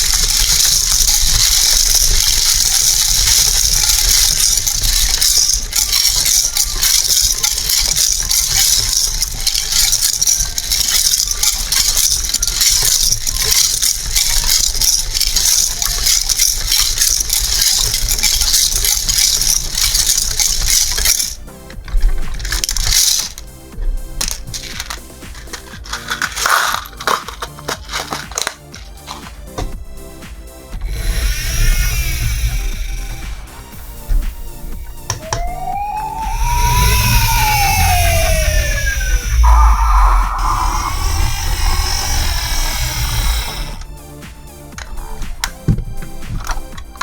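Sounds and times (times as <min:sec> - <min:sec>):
small hard objects rattling: 0:00.0 - 0:47.0.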